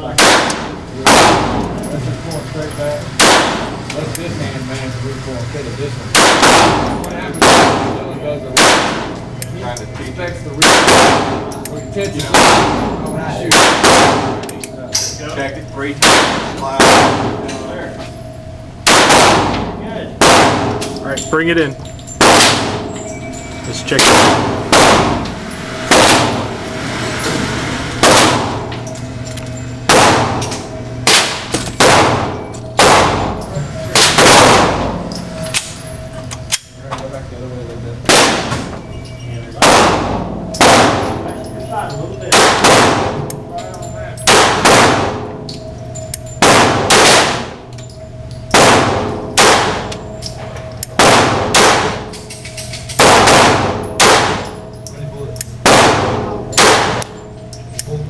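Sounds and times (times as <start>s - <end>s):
gunshots with echo: 0.0s - 1.8s, 3.2s - 3.9s, 6.1s - 9.2s, 10.6s - 11.5s, 12.2s - 14.6s, 16.0s - 17.5s, 18.8s - 21.0s, 22.2s - 23.0s, 23.9s - 26.6s, 28.0s - 28.8s, 29.8s - 35.7s, 38.0s - 38.7s, 39.6s - 41.5s, 42.2s - 43.3s, 44.2s - 45.4s, 46.4s - 47.6s, 48.5s - 50.0s, 50.9s - 52.1s, 53.0s - 54.6s, 55.6s - 57.2s.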